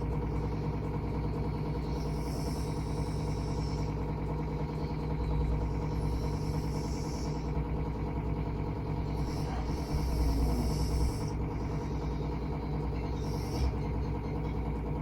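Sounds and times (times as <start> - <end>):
person breathing and snoring: 0.0 - 15.0
steady low hum: 0.0 - 15.0.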